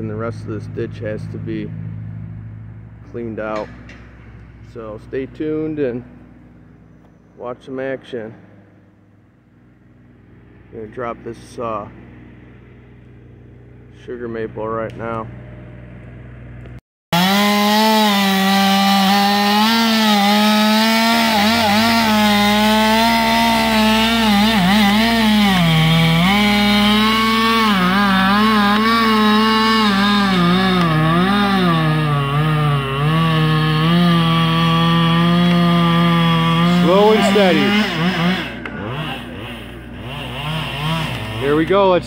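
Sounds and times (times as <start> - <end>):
chainsaw cutting wood: 17.1 - 41.9.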